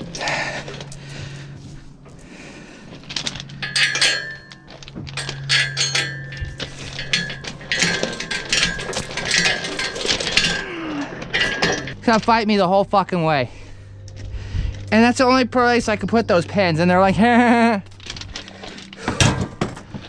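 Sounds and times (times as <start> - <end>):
metal tools clanking: 2.9 - 12.6, 14.9 - 20.0.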